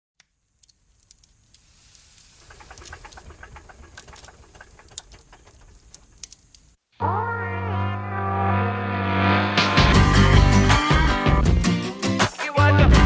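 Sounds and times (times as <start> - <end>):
light hiss: 0.2 - 6.8
record crackling: 0.2 - 11.1.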